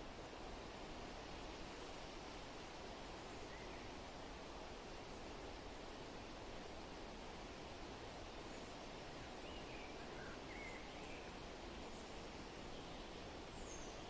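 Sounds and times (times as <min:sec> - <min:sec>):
faint bird chirps: 0:03.4 - 0:04.0, 0:09.4 - 0:14.0.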